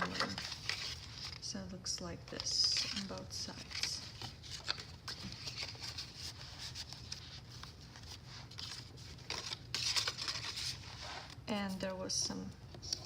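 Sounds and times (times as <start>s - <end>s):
paper pages rustling: 0.0s - 13.0s.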